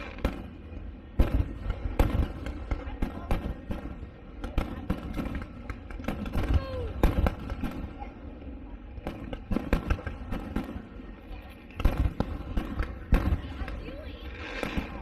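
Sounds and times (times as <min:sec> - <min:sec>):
fireworks bangs and crackling pops: 0:00.0 - 0:15.0.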